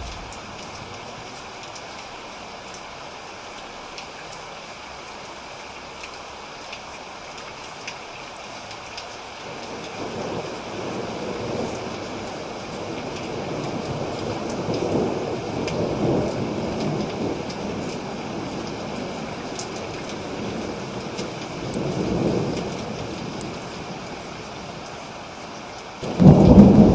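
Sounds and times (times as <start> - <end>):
thunder rumbling: 0.0 - 1.9, 26.0 - 26.9
raindrops ticking: 0.0 - 26.9
steady rain: 0.0 - 26.9.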